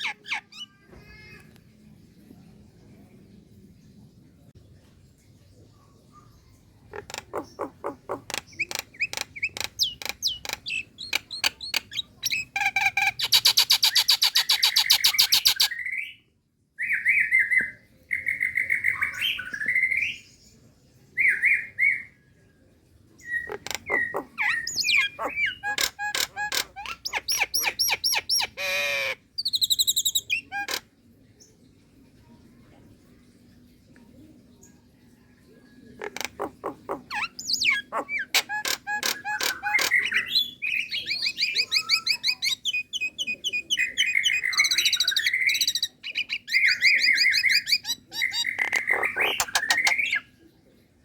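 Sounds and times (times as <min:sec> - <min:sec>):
myna calling and clicking: 0:06.8 - 0:15.7, 0:23.4 - 0:30.9, 0:36.0 - 0:50.3.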